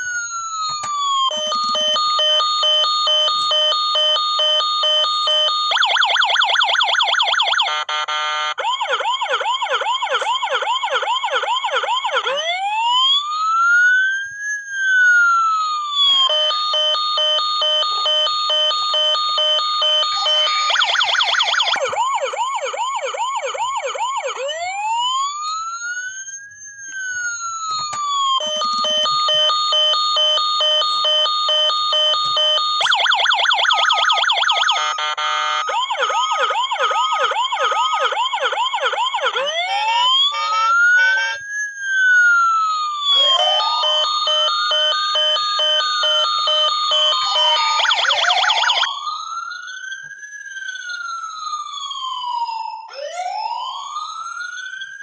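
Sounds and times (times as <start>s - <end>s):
toy siren yelping: 0.0s - 14.1s, 14.7s - 49.3s, 50.6s - 54.3s
toy siren wail: 0.0s - 55.0s
pulsing electronic beeps: 1.3s - 7.7s, 16.1s - 21.9s, 28.4s - 35.3s, 43.1s - 48.9s.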